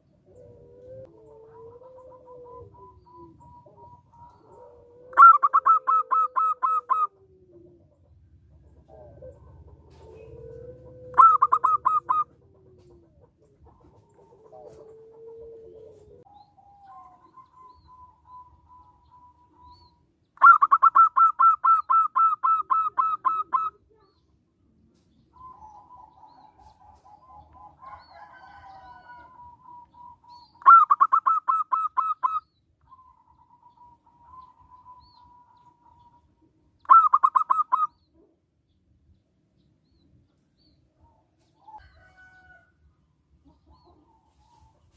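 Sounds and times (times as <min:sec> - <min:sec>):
dove cooing: 0:00.0 - 0:24.2, 0:25.3 - 0:38.4, 0:43.4 - 0:44.9
faint trilling coos: 0:00.3 - 0:08.0, 0:08.8 - 0:13.3.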